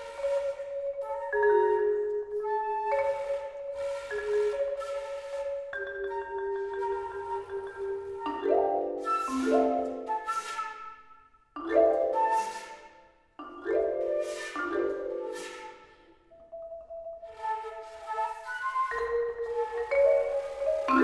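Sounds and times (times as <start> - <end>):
marimba chords ringing: 3.2 - 10.2, 11.6 - 17.2, 19.1 - 21.0.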